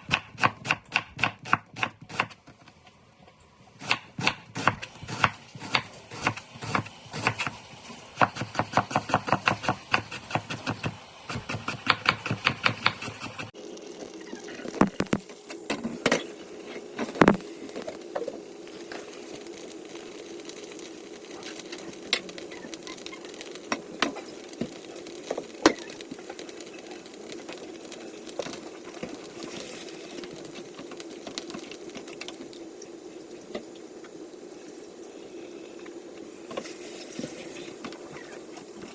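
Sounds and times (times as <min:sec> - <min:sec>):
knife chopping on cutting board: 0:08.2 - 0:13.3
knocks and clicks: 0:14.8 - 0:15.8.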